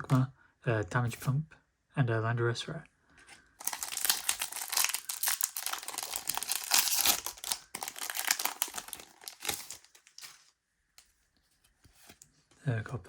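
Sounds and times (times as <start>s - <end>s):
foil wrapper crinkling and tearing: 3.6s - 10.5s.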